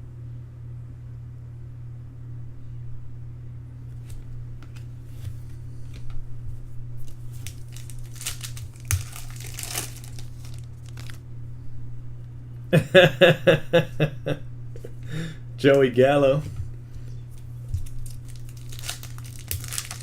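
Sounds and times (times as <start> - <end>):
steady low hum: 0.0 - 20.0
foil wrapper crinkling and tearing: 7.0 - 11.2, 17.4 - 20.0.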